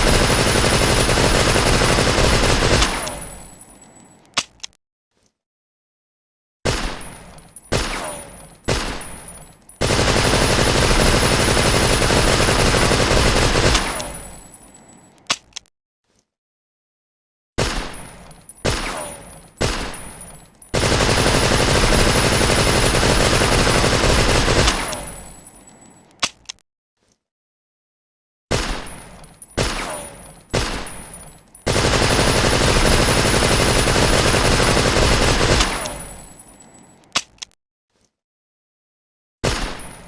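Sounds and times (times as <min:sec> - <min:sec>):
automatic gunfire burst: 0:00.0 - 0:03.1, 0:09.8 - 0:14.0, 0:20.8 - 0:24.9, 0:31.7 - 0:36.0.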